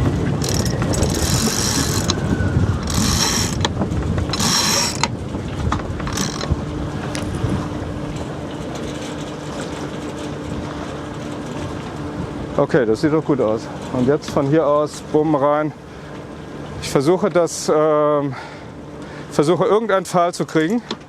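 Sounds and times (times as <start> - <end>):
wind rumbling on microphone: 0.0 - 17.0
winch ratcheting: 0.4 - 7.3.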